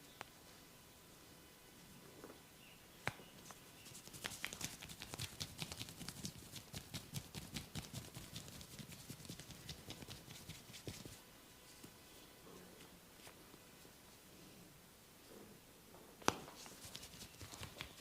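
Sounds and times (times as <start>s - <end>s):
hair snapping and crackling: 4.0s - 11.1s, 16.3s - 18.0s.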